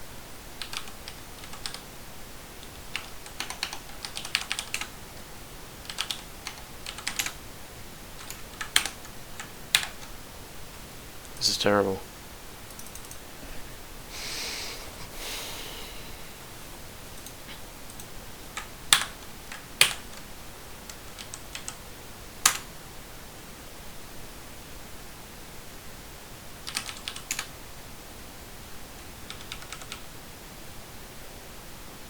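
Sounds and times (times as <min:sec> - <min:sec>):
computer keyboard typing: 0:00.6 - 0:01.8, 0:02.6 - 0:04.9, 0:05.8 - 0:07.4, 0:08.2 - 0:10.2, 0:12.6 - 0:13.2, 0:17.2 - 0:21.8, 0:22.4 - 0:22.7, 0:26.6 - 0:27.5, 0:29.2 - 0:30.0.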